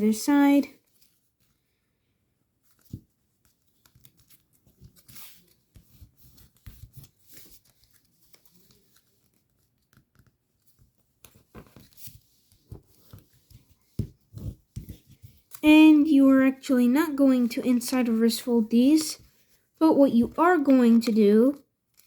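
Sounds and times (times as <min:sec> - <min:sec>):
paper rustling and crinkling: 0:00.8 - 0:01.8, 0:02.6 - 0:15.6, 0:18.8 - 0:22.0.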